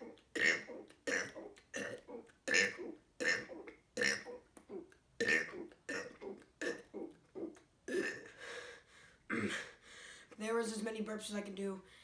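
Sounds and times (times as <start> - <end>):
man burping: 0.0 - 8.4, 9.3 - 9.7.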